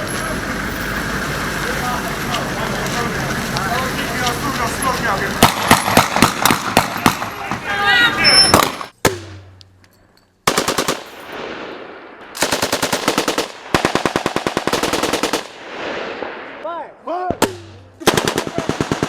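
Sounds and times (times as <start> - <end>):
machine-gun fire: 5.3 - 7.7, 10.5 - 16.6, 17.4 - 19.0.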